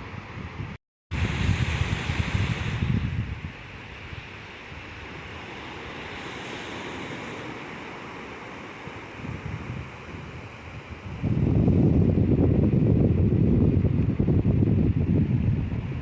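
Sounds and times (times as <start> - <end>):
wind on microphone: 0.0 - 8.2, 8.9 - 16.0
ocean waves washing on shore: 0.1 - 16.0.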